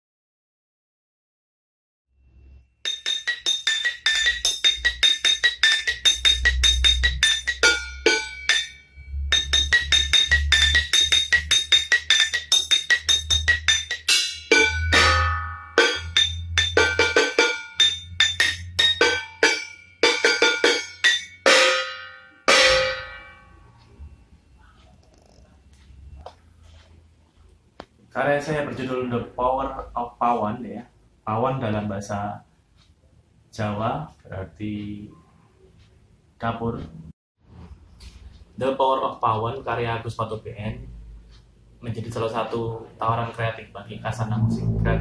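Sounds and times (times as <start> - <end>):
strikes on metal kitchenware: 2.9 - 23.6
low steady bass: 6.0 - 12.0, 43.9 - 45.0.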